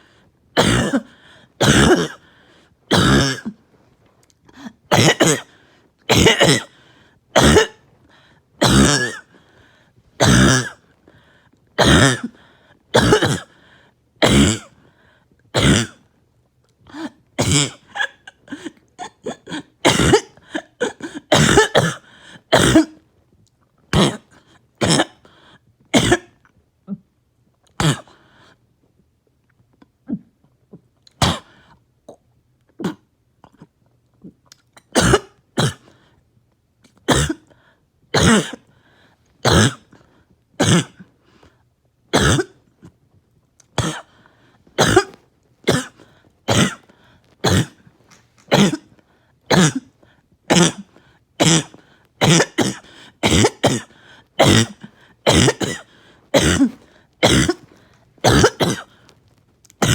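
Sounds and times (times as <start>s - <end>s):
person coughing harshly: 0.6s - 2.3s, 2.9s - 3.6s, 4.5s - 7.8s, 8.6s - 9.4s, 10.2s - 10.8s, 11.8s - 13.6s, 14.2s - 14.8s, 15.6s - 16.0s, 16.9s - 23.0s, 23.9s - 25.2s, 25.9s - 26.4s, 27.8s - 28.2s, 31.2s - 31.6s, 34.9s - 35.9s, 37.1s - 37.5s, 38.1s - 38.7s, 39.4s - 40.0s, 40.6s - 41.1s, 42.1s - 42.6s, 43.8s - 44.2s, 44.8s - 49.9s, 50.5s - 59.1s.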